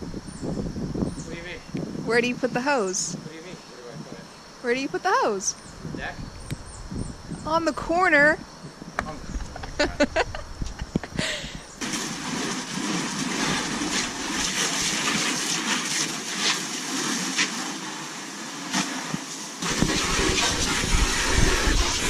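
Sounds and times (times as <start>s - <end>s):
hose spraying water on plastic: 11.8s - 22.0s.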